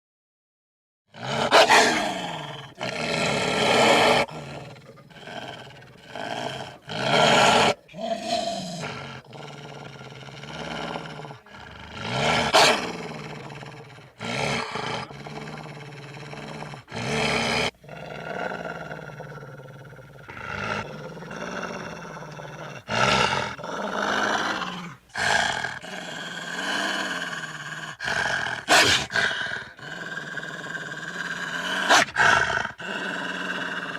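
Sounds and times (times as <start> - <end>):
wolves growling and snarling: 1.1 - 33.9.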